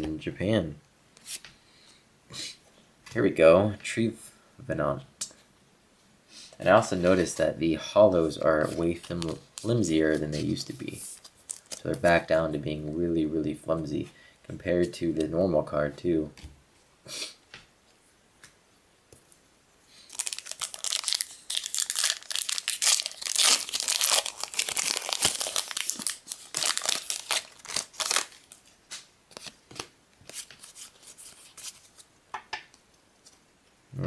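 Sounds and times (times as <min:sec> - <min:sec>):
foil wrapper tearing and crinkling: 0:20.1 - 0:28.6.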